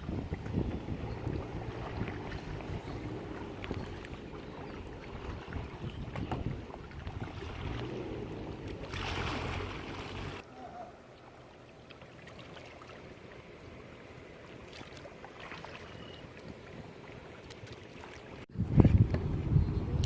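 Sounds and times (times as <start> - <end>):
wind buffeting microphone: 0.0 - 10.4, 18.5 - 20.0
water washing around kayak: 0.0 - 18.5.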